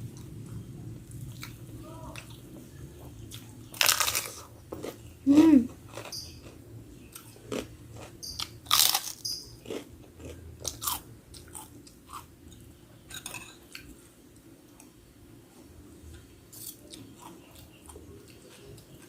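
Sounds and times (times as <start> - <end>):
chewing crunchy crackers: 3.1 - 5.1, 5.7 - 14.0, 16.5 - 19.0.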